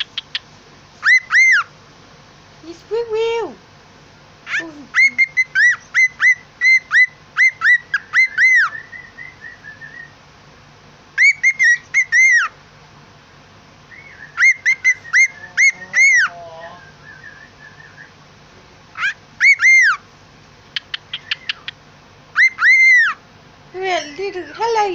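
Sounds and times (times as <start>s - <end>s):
bird whistling: 0.0s - 1.7s, 4.5s - 10.2s, 11.2s - 12.5s, 13.9s - 18.2s, 19.0s - 20.0s, 20.7s - 23.2s
soft bird chirps: 0.0s - 1.7s, 4.5s - 10.2s, 11.2s - 12.6s, 13.9s - 18.2s, 18.9s - 20.0s, 20.7s - 23.2s.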